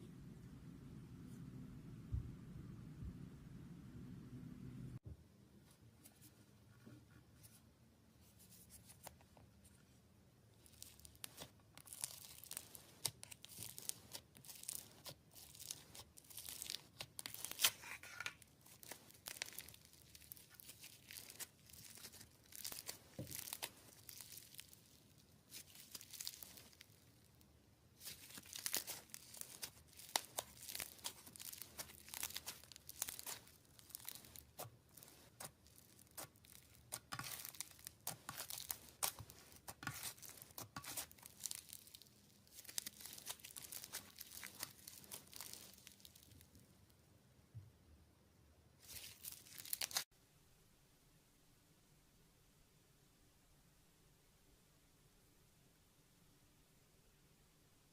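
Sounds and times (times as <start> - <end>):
slime crackling and popping: 10.6 - 27.3, 28.0 - 46.5, 48.8 - 50.0.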